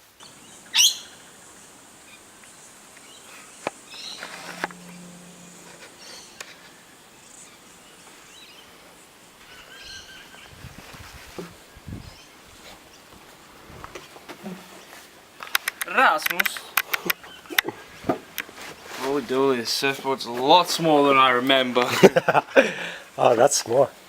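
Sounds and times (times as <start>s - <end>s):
steady high hiss: 0.0s - 10.6s
sharp descending bird call: 3.9s - 8.6s.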